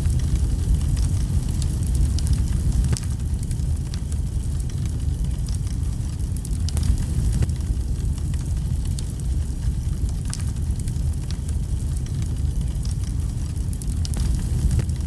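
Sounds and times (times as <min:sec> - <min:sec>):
low fire rumble: 0:00.0 - 0:15.0
wood fire crackling: 0:00.0 - 0:15.0.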